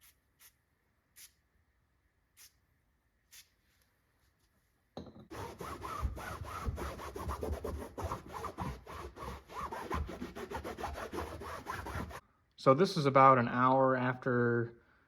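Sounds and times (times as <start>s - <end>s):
scrubbing strokes: 5.3s - 12.2s.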